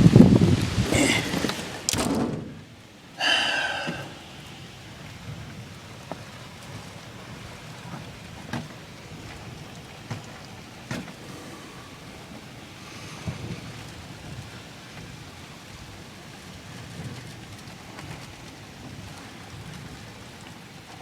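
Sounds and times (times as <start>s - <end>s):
storm wind roaring: 0.0s - 14.6s.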